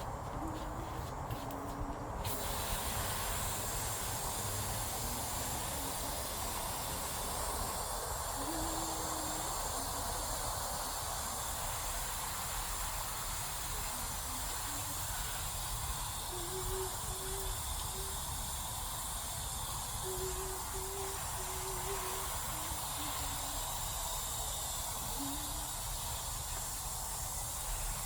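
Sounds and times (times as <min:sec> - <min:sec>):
steady hissing noise: 0:00.0 - 0:28.0.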